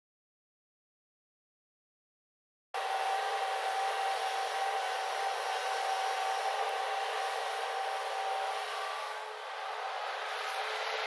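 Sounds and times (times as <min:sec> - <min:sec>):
high hum: 0:02.8 - 0:11.0.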